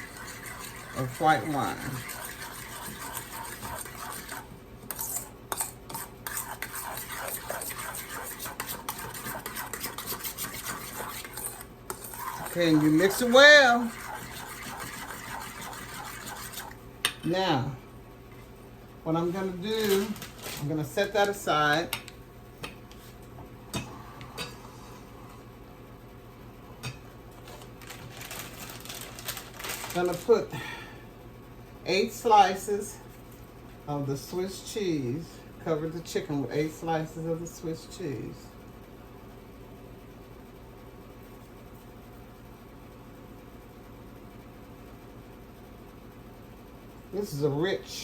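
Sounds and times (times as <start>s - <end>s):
utensil stirring in a bowl: 0.0s - 17.6s, 19.2s - 22.1s
steady low hum: 0.0s - 48.0s.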